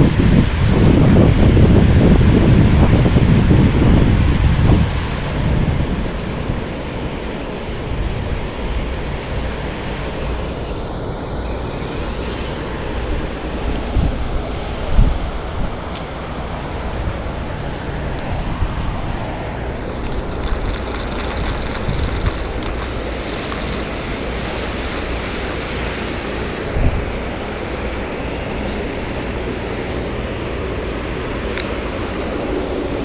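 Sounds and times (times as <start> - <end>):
wind buffeting microphone: 0.0 - 6.8, 12.6 - 33.0
steady rushing noise: 13.1 - 33.0
low bumps: 19.6 - 27.2.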